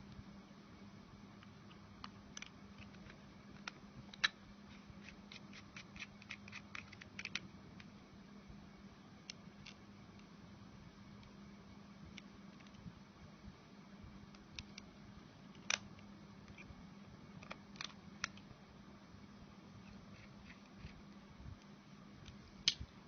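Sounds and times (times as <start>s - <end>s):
low steady hum: 0.0s - 23.0s
plastic torch parts clicking: 5.0s - 7.9s.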